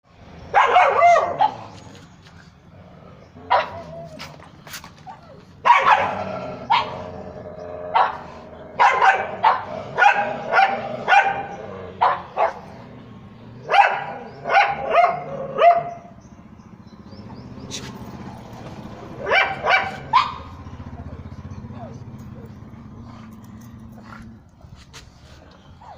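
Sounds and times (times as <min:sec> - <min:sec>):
dog barking: 0:00.5 - 0:01.8, 0:03.5 - 0:03.9, 0:05.6 - 0:07.1, 0:07.9 - 0:12.8, 0:13.6 - 0:16.1, 0:19.2 - 0:22.5.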